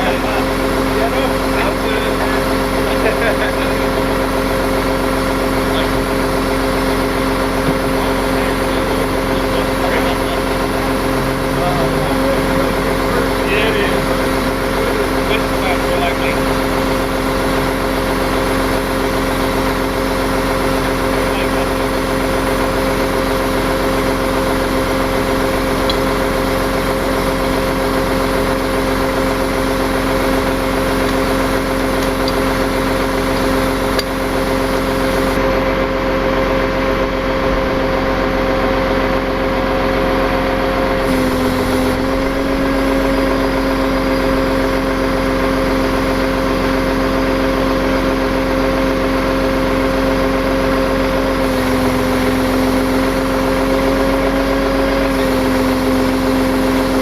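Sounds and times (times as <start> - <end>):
truck engine humming: 0.0 - 57.0.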